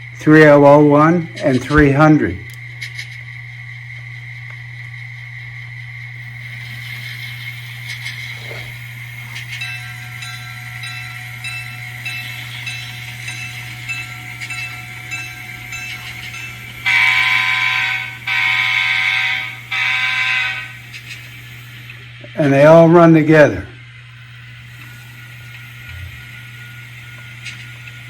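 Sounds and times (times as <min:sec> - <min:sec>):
model locomotive running sound: 0:00.0 - 0:28.0
locomotive bell ringing: 0:08.8 - 0:20.8
multi-chime air horn blasts: 0:09.5 - 0:20.8.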